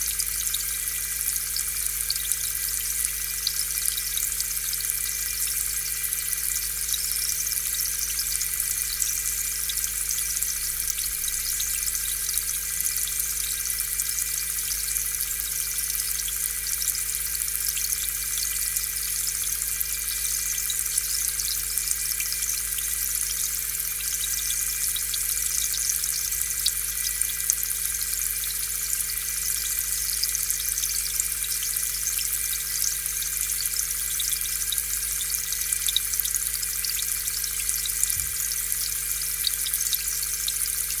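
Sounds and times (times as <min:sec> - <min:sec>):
aquarium air pump humming: 0:02.6 - 0:15.3, 0:35.5 - 0:41.0.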